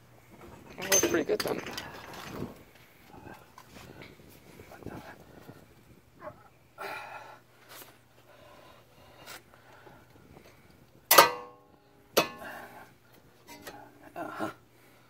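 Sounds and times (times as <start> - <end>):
sharp metallic clank: 11.1 - 12.6.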